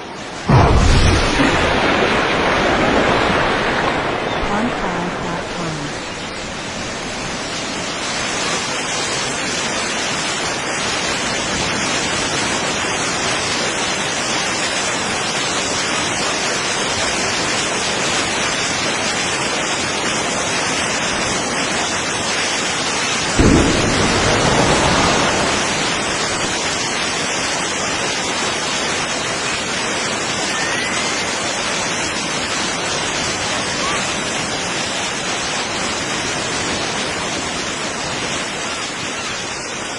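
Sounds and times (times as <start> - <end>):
steady rushing noise: 0.0 - 11.3, 23.2 - 27.7
loud boom with deep rumble: 0.4 - 6.2, 23.4 - 27.2.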